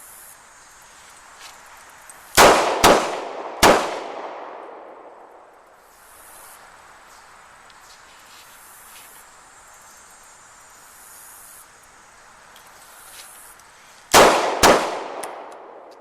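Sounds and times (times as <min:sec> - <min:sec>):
insects buzzing: 0:00.0 - 0:16.0
steady hiss: 0:00.0 - 0:16.0
gunshots: 0:02.4 - 0:05.1, 0:14.1 - 0:15.8.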